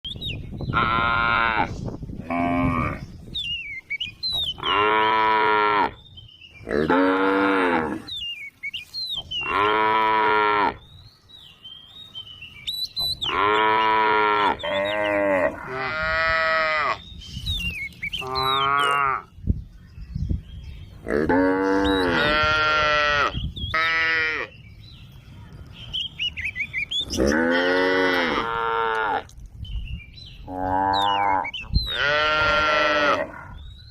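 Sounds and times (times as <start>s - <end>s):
birds chirping faintly: 2.6s - 15.6s
cows mooing: 4.6s - 6.0s, 6.7s - 8.1s, 9.4s - 10.8s, 13.2s - 17.0s, 18.2s - 19.3s, 21.1s - 24.5s, 27.1s - 29.3s, 30.5s - 33.5s.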